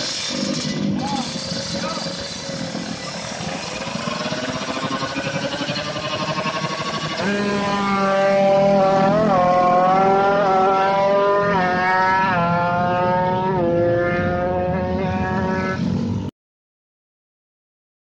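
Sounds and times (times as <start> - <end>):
exhaust clattering: 0.0 - 9.9
two-stroke motorcycle engine revving: 0.0 - 16.3.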